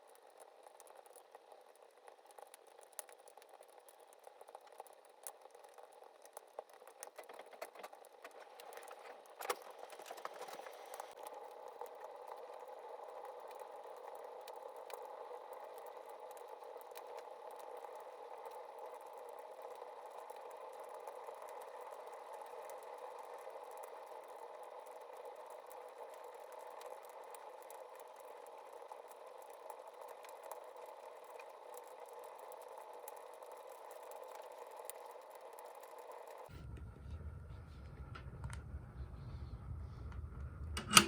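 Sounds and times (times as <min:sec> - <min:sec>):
fire crackles and pops: 0:00.0 - 0:36.9
wood fire rushing hiss: 0:06.9 - 0:19.4.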